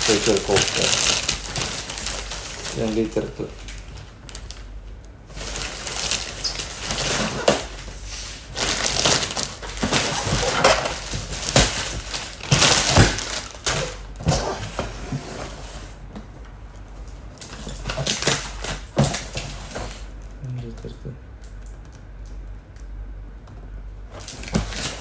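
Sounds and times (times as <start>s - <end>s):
packaging crunching and crinkling: 0.0s - 15.0s, 17.4s - 20.4s, 24.1s - 25.0s.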